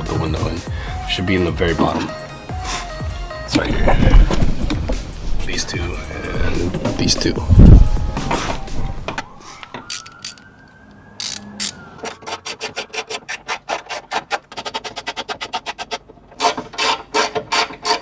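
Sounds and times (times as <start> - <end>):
socket ratchet clicking: 9.8 - 10.5.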